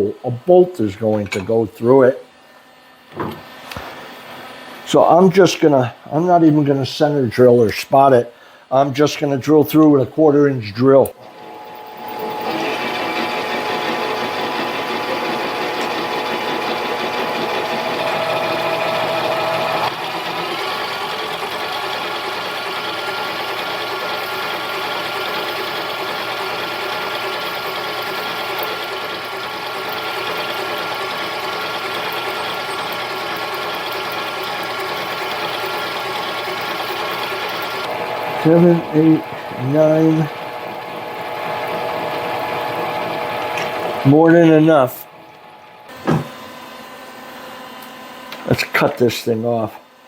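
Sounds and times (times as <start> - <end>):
lathe motor whine: 11.1 - 50.0.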